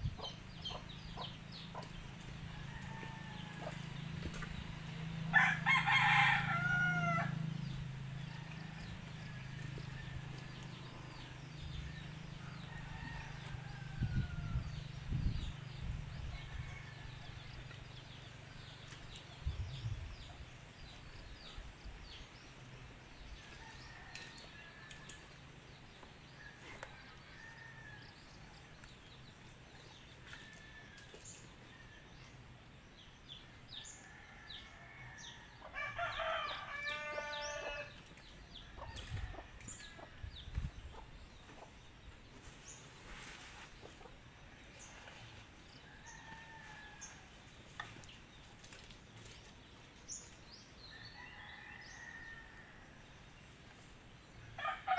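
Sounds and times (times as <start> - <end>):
small birds chirping: 0.0 - 6.4
rooster crowing: 2.5 - 4.0, 5.3 - 7.6, 34.1 - 37.9.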